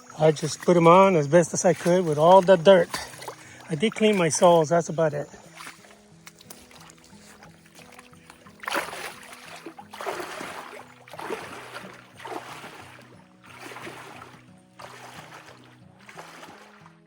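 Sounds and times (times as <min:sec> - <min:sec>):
background music with low melody: 0:00.0 - 0:17.0
splashing strides through water: 0:00.0 - 0:17.0.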